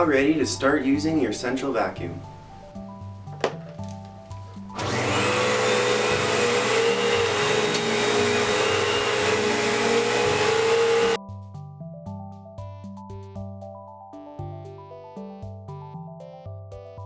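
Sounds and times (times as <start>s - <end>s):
vacuum cleaner whining rush: 4.8s - 11.2s.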